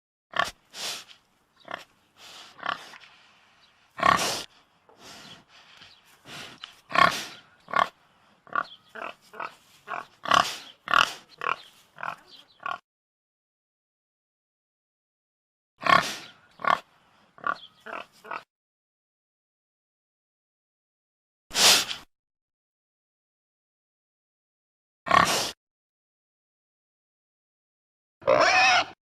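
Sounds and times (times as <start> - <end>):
pig grunting: 1.6 - 3.0, 4.0 - 4.5, 6.9 - 12.8, 15.8 - 18.5, 25.1 - 25.6, 28.2 - 29.0.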